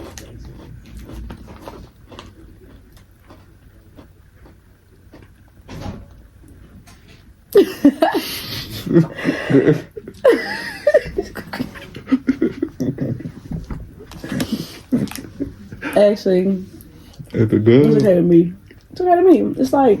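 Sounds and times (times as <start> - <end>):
people laughing: 7.6 - 16.1, 17.2 - 18.0.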